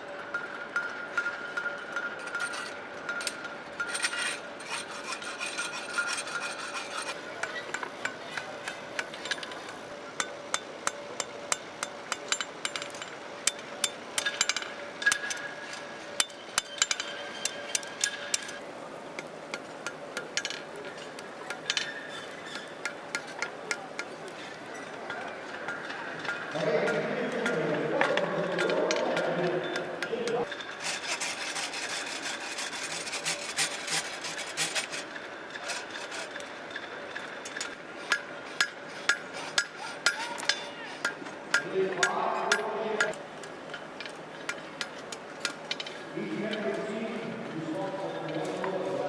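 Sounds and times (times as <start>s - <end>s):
hammers striking steel on anvils: 0.3s - 4.3s, 4.9s - 15.5s, 16.1s - 30.6s, 37.6s - 43.2s.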